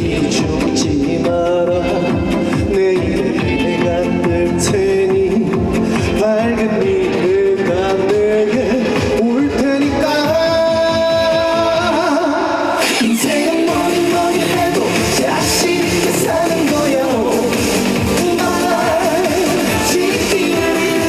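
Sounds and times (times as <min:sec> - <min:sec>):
upbeat song over loudspeakers: 0:00.0 - 0:21.0
steady drum beat: 0:13.0 - 0:21.0.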